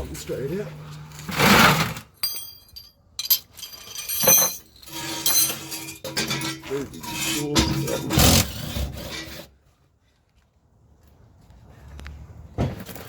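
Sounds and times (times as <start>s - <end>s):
metal tools clinking and scraping: 0.0s - 8.5s.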